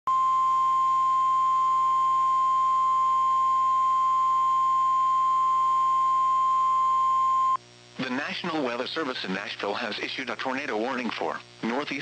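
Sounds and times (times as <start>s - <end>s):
steady high alarm tone: 0.1s - 7.6s.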